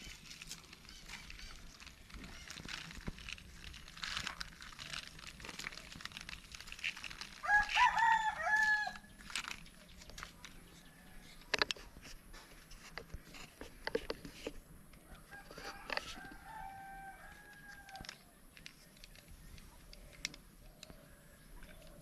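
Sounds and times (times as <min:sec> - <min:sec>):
faint clicks and knocks: 0:09.2 - 0:22.0.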